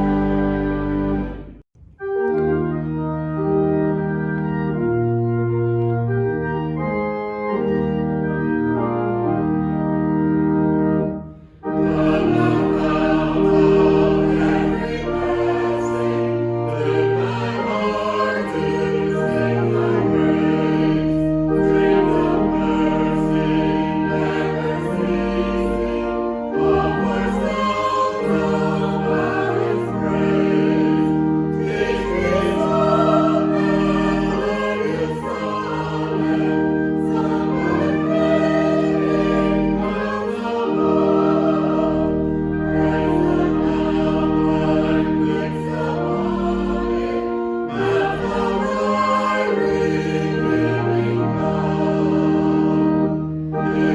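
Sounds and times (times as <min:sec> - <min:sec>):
choir singing: 0:00.0 - 0:02.4, 0:11.0 - 0:53.9
organ playing held chords: 0:00.0 - 0:53.9.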